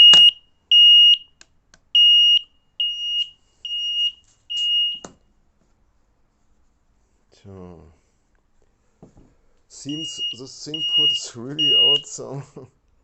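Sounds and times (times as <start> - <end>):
high-pitched alarm beeps: 9.9 - 12.1
alarm click: 10.8 - 12.1.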